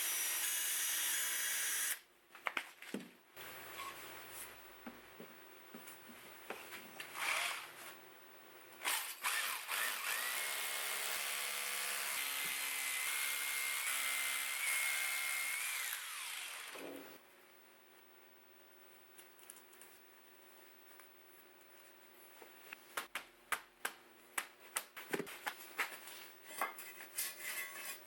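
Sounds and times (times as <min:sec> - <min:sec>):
power tool motor whining: 0:11.5 - 0:16.8.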